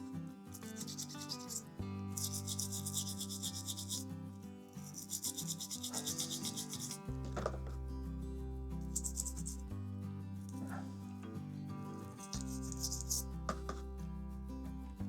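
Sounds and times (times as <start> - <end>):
toothbrush scrubbing metal tools: 0.0 - 7.8, 8.8 - 9.7, 10.4 - 11.2, 11.8 - 13.8.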